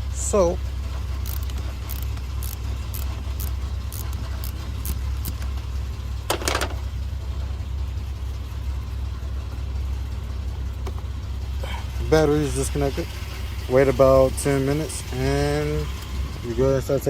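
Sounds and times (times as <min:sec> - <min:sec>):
hand tool clicking on battery terminal: 0:01.2 - 0:05.4
metallic clank: 0:05.3 - 0:07.0.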